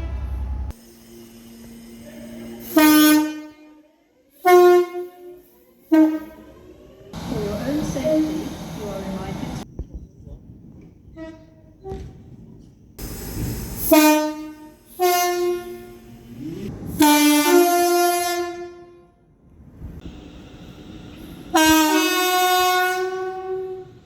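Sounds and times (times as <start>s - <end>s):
train horn blasts: 0.0s - 6.6s, 13.7s - 16.4s, 17.0s - 19.2s, 21.5s - 24.0s.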